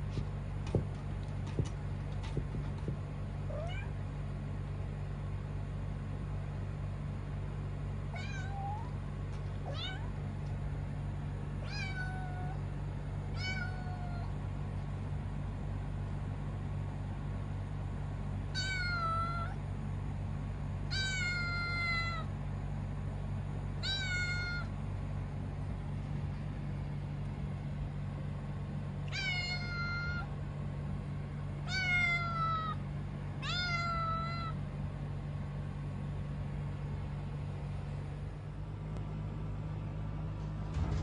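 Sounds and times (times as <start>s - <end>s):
steady low hum: 0.0s - 41.0s
kitten meowing: 8.2s - 8.9s, 9.7s - 10.1s, 18.6s - 19.6s, 20.9s - 22.3s, 23.8s - 24.7s, 29.1s - 30.3s, 31.7s - 32.8s.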